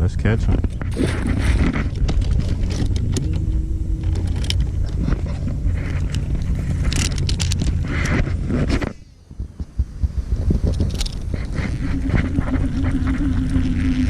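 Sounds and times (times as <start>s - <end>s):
wind buffeting microphone: 0.0s - 14.0s
fishing reel clicks and rattles: 4.0s - 8.3s, 10.7s - 11.3s.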